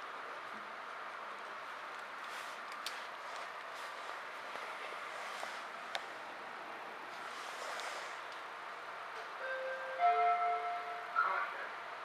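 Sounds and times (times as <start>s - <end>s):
steady hiss inside train: 0.0s - 12.0s.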